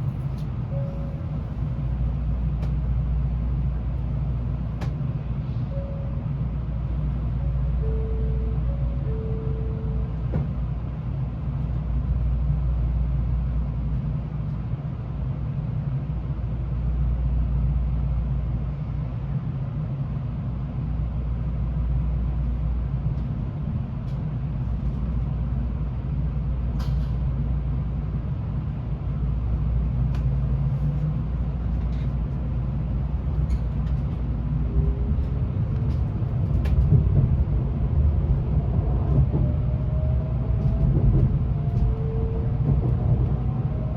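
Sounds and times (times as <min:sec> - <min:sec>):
train running rumble: 0:00.0 - 0:43.9.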